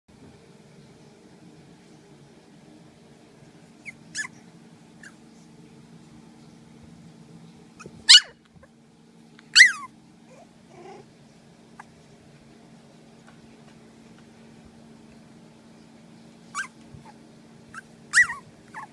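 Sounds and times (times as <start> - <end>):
steady low hum: 0.1 - 18.9
puppies yelping and squealing: 3.8 - 4.4, 5.0 - 5.2, 7.8 - 8.3, 9.5 - 11.1, 16.5 - 18.9.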